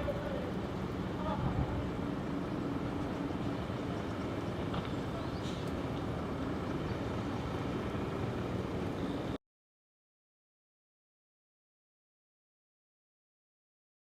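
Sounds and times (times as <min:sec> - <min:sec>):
vehicle engine and road noise: 0:00.0 - 0:09.4.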